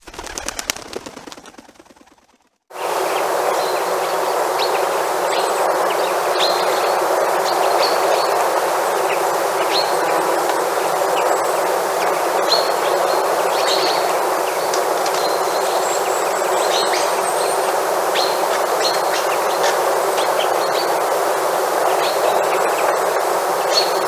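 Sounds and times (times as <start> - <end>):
small birds chirping: 0.0 - 2.2, 12.4 - 21.1
rapid ticks: 0.0 - 2.5
steady rushing background: 0.0 - 2.5.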